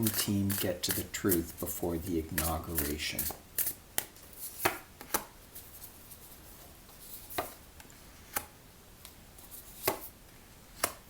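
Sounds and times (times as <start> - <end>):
cards tapping and snapping: 2.3 - 5.3, 9.8 - 10.1, 10.8 - 11.0.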